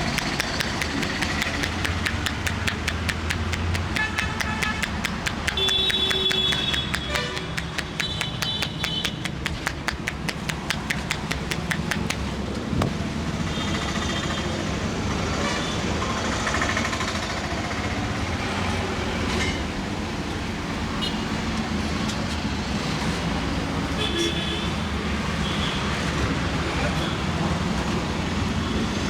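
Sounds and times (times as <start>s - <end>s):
rhythmic massage hand slaps: 0.0s - 12.4s
street traffic noise: 0.0s - 29.0s
car horns: 3.9s - 9.2s.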